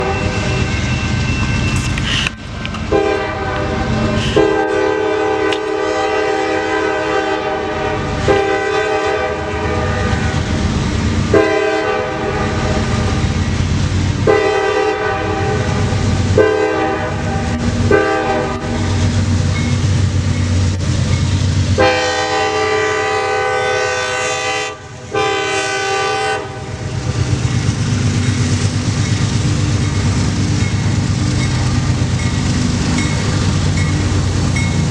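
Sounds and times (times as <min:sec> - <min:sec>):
locomotive horn blasts: 0:00.0 - 0:00.9, 0:02.9 - 0:10.4, 0:11.3 - 0:13.2, 0:14.2 - 0:19.0, 0:21.8 - 0:26.8
rumble of rolling train: 0:00.0 - 0:34.9.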